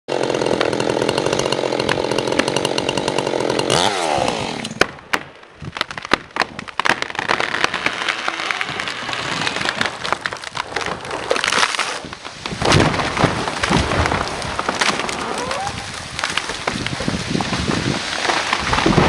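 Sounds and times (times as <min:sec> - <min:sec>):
chainsaw running: 0:00.1 - 0:04.8
sharp cracks and snaps: 0:04.6 - 0:19.0.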